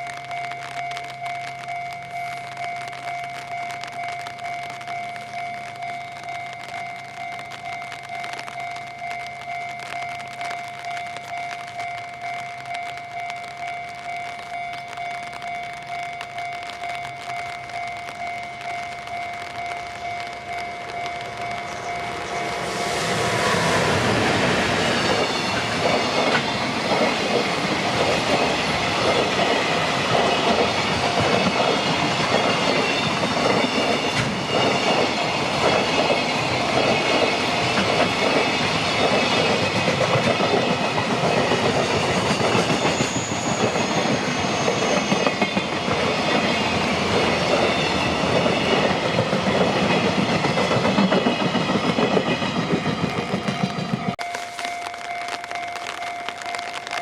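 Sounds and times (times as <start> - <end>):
freight train wheels clicking: 0.0 - 54.4
high squeal: 42.0 - 48.7.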